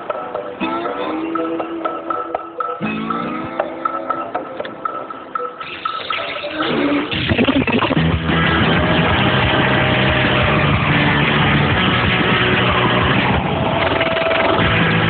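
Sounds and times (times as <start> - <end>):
engine-like roar: 7.9 - 15.0.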